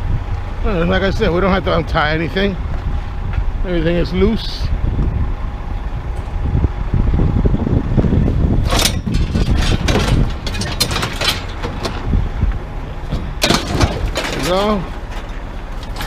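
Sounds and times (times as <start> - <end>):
engine running: 0.0 - 16.0
scrap metal clanking and scraping: 8.5 - 16.0.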